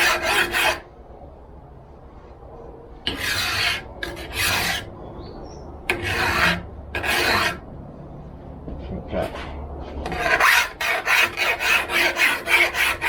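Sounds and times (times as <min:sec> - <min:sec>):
file scraping steel: 0:00.0 - 0:00.8, 0:03.1 - 0:05.0, 0:05.9 - 0:07.7, 0:10.0 - 0:13.0.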